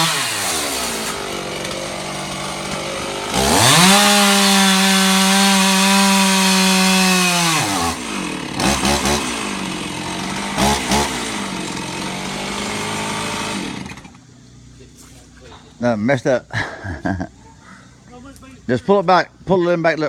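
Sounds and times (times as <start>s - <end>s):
chainsaw cutting and revving: 0.0s - 14.2s.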